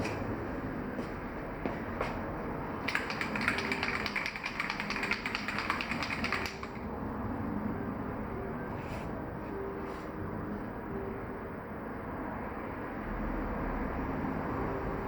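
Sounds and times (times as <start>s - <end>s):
rapid mechanical clicking: 2.8s - 6.9s.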